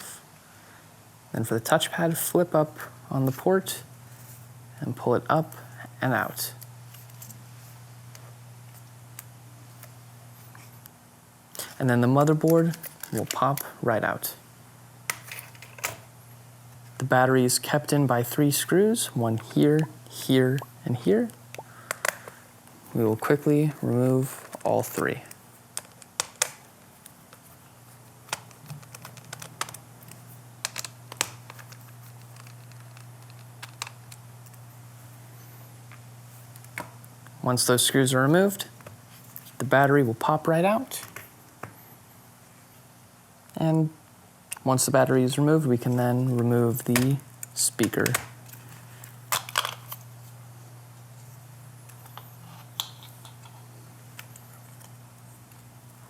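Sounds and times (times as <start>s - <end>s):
clicks of laptop parts: 25.8s - 27.4s, 28.3s - 34.1s.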